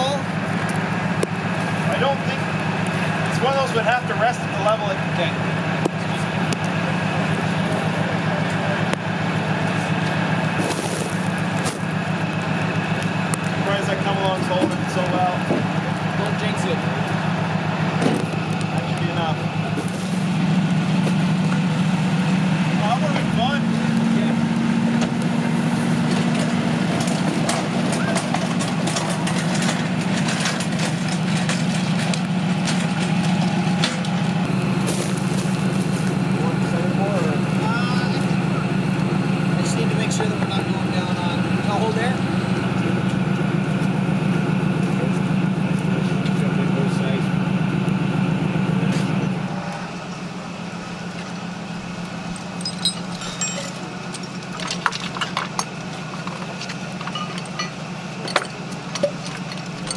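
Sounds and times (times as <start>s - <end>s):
vehicle engine idling: 0.0s - 59.9s
light metallic clinks: 52.2s - 59.9s.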